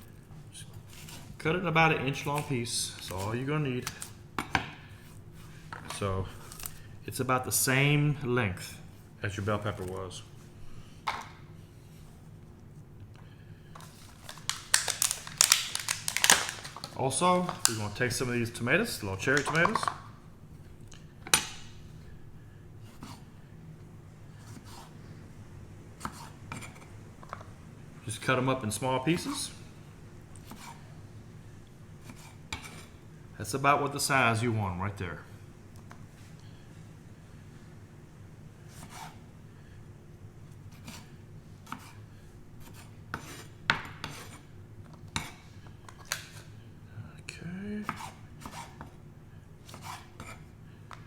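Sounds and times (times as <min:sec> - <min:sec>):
soft handling noises: 0:00.0 - 0:08.0, 0:08.6 - 0:21.1
low steady hum: 0:00.0 - 0:51.0.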